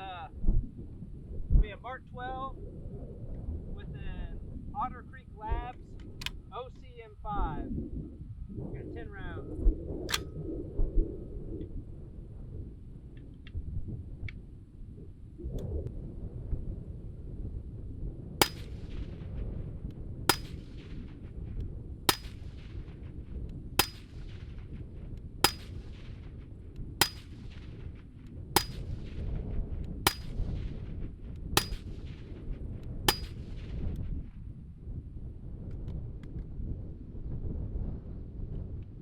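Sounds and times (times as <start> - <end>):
wind rumbling on microphone: 0.0 - 39.0
suppressed rifle shots: 6.0 - 6.5, 10.1 - 10.4, 18.4 - 19.3, 20.3 - 21.3, 22.1 - 23.2, 23.8 - 24.8, 25.4 - 28.0, 28.6 - 29.3, 30.0 - 30.9, 31.6 - 32.4, 33.1 - 33.8.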